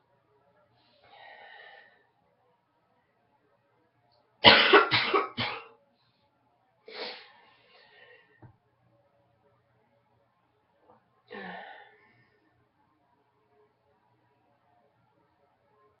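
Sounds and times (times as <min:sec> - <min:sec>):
woman coughing: 0:04.4 - 0:05.7.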